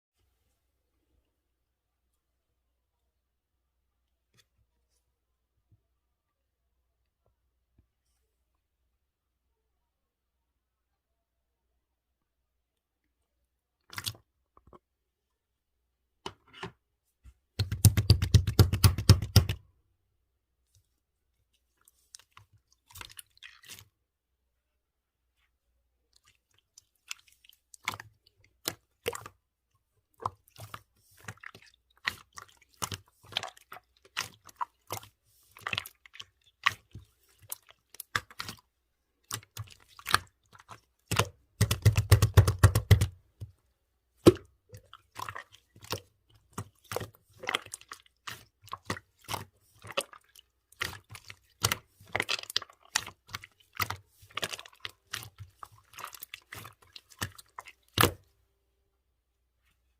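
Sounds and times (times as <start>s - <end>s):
slime squishing and popping: 39.3s - 43.2s.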